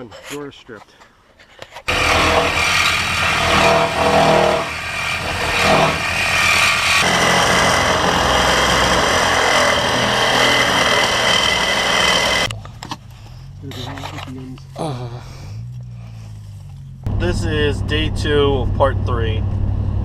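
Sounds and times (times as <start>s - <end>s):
loud motor running: 1.9s - 12.5s.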